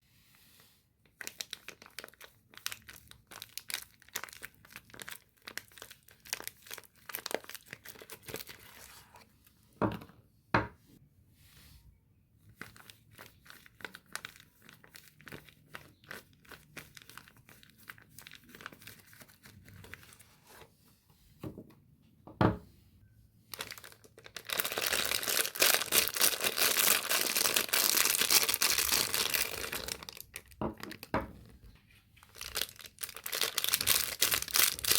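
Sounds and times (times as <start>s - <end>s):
wrappers crinkling: 1.2s - 9.2s, 12.6s - 20.2s, 23.5s - 31.6s, 32.2s - 34.9s
wrapper tearing: 23.5s - 31.1s, 32.2s - 34.9s.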